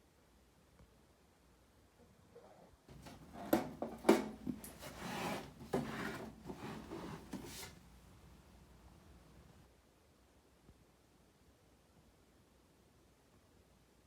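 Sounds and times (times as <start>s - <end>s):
rubbing and scraping: 2.9s - 7.8s.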